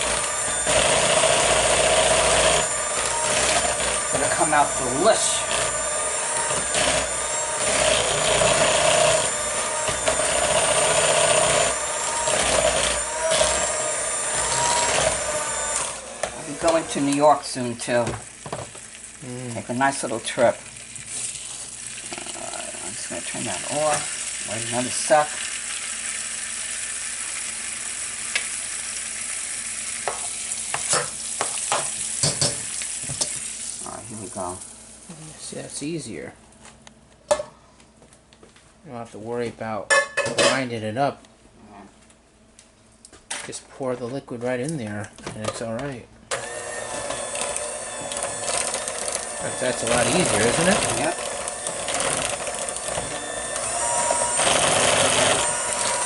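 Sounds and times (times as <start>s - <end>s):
butter sizzling in a pan: 0.0s - 35.1s
kitchen appliance motor humming: 0.0s - 35.2s, 46.3s - 56.0s.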